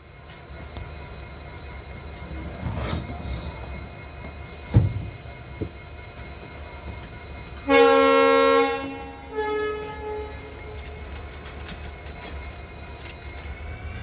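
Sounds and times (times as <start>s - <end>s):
moving train rumble: 0.0s - 14.0s
locomotive horn chord: 7.6s - 10.6s.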